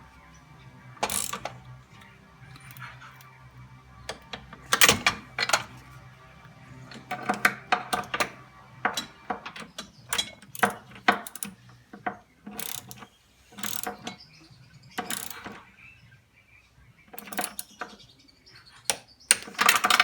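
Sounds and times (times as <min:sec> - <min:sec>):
ratchet wrench clicking: 0:01.0 - 0:03.4, 0:06.9 - 0:11.7, 0:12.5 - 0:14.2, 0:15.0 - 0:15.6, 0:17.2 - 0:17.8.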